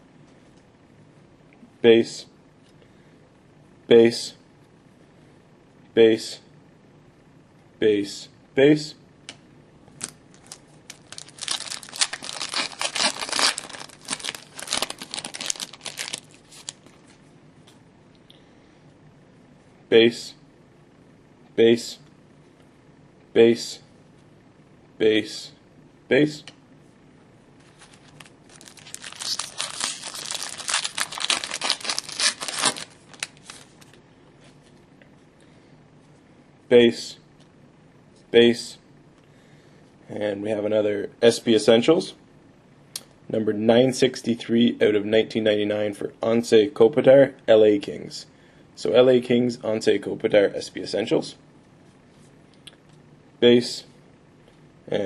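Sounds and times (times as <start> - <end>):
foil wrapper tearing and crinkling: 10.0 - 16.9, 27.8 - 33.8.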